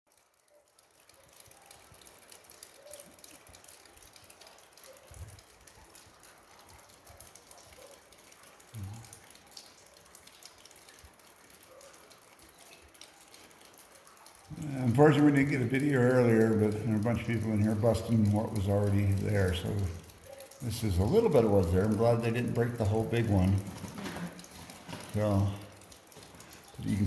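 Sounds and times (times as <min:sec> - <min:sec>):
meltwater dripping: 0:00.1 - 0:27.0.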